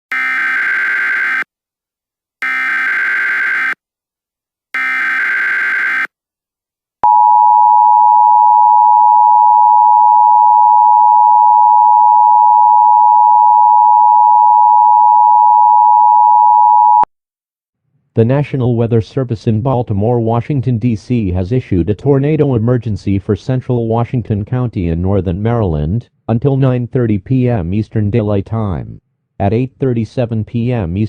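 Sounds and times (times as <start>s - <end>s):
steady attention tone: 7.0s - 17.0s.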